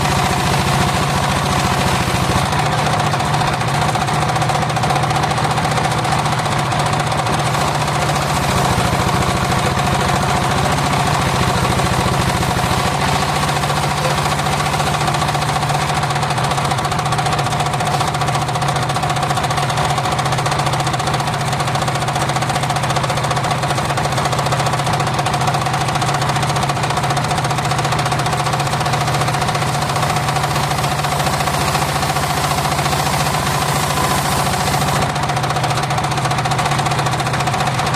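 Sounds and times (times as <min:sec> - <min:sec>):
spinning saw hum: 0:00.0 - 0:04.0, 0:05.2 - 0:16.7, 0:28.0 - 0:35.2
engine chugging: 0:00.0 - 0:37.9.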